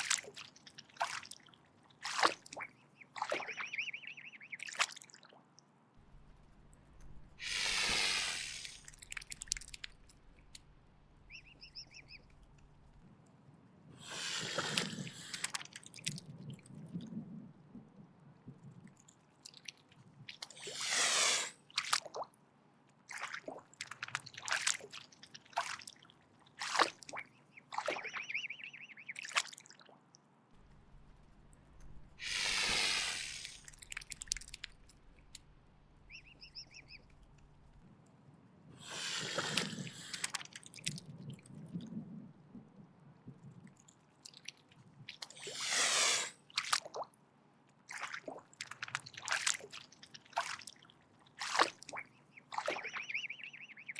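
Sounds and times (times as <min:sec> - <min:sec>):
swan hissing: 0:07.2 - 0:09.2, 0:14.0 - 0:15.6, 0:20.6 - 0:21.7, 0:31.9 - 0:35.3, 0:38.8 - 0:40.4, 0:45.4 - 0:46.5.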